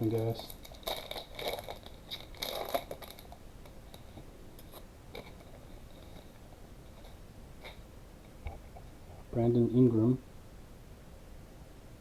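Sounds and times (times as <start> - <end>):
foil wrapper crinkling: 0.0 - 7.8.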